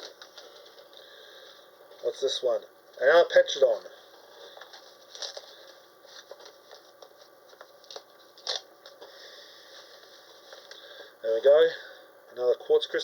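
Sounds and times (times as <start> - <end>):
packaging crinkling: 4.4 - 9.0.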